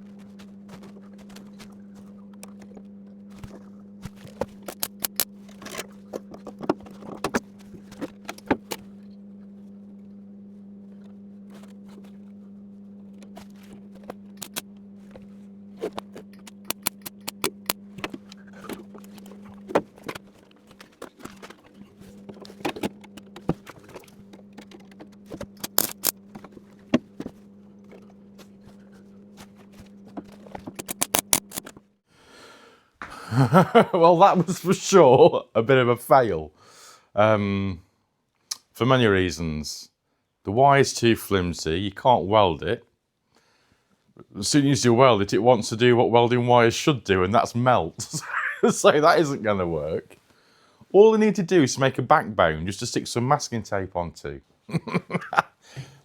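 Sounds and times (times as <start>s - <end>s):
steady low hum: 0.0s - 42.8s, 44.1s - 56.0s
wire clicks and taps: 4.6s - 7.4s, 15.9s - 21.7s, 22.4s - 26.6s, 30.2s - 31.8s.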